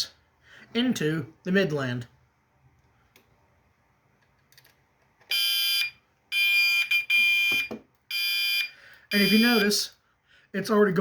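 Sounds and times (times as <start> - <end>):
fire alarm horn blasts: 5.3 - 9.8.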